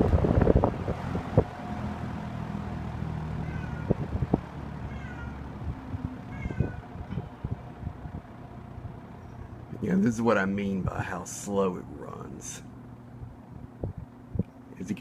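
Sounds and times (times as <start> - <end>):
box fan motor humming: 0.0 - 15.0
cat meowing: 3.4 - 4.1, 4.8 - 5.5, 6.3 - 6.9.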